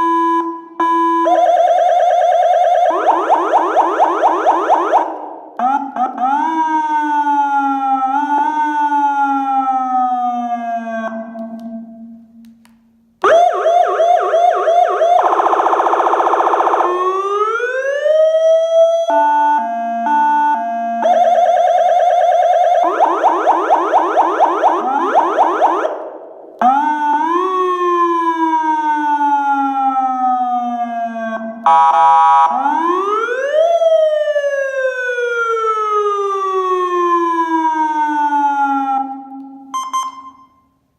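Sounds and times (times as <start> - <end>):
electronic vehicle siren: 0.0 - 12.2, 13.2 - 40.8
horn-like siren blast: 19.0 - 33.6.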